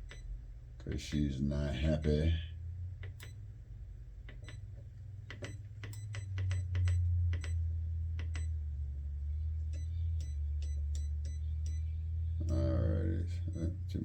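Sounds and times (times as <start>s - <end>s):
low sine test tone hum: 0.0s - 14.0s
sharp clicks: 3.0s - 3.4s, 4.2s - 4.7s, 5.3s - 7.6s, 8.2s - 8.6s.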